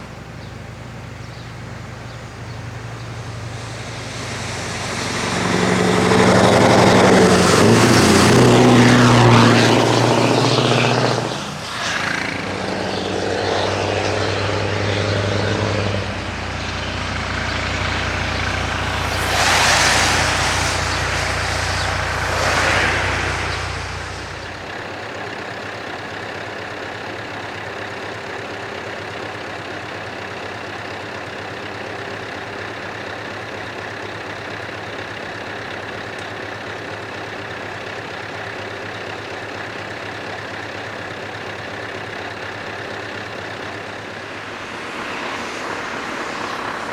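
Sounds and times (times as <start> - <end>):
truck engine pulling away: 0.0 - 46.9
loud hissing bursts: 17.4 - 24.6.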